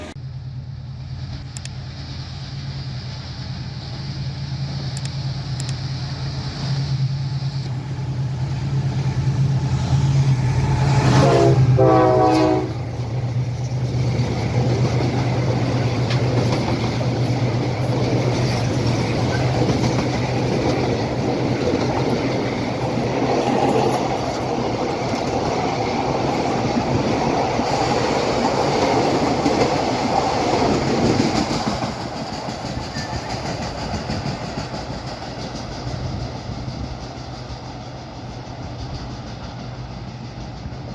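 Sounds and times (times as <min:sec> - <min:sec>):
diesel locomotive engine: 0:00.0 - 0:40.9
train horn: 0:10.8 - 0:12.9
train wheels clattering: 0:12.0 - 0:40.9.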